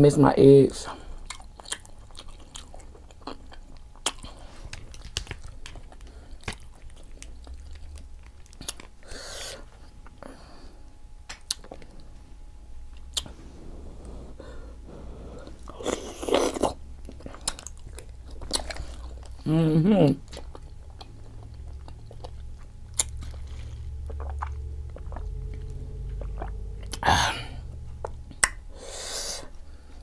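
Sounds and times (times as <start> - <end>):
low steady hum: 0.0 - 30.0
close chewing with wet mouth clicks: 1.2 - 9.1, 11.4 - 12.1, 15.5 - 19.5, 20.2 - 27.0.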